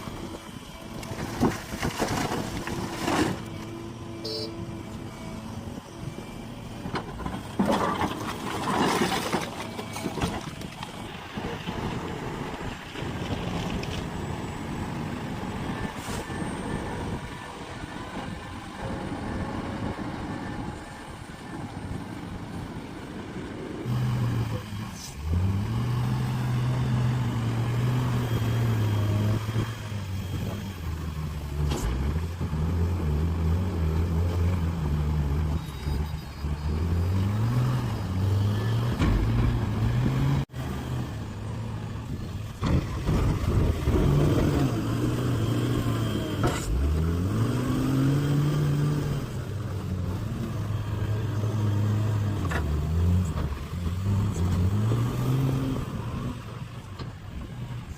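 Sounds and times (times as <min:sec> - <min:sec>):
heavy diesel machinery: 0:00.0 - 0:57.9
diesel engine revving: 0:22.8 - 0:57.9.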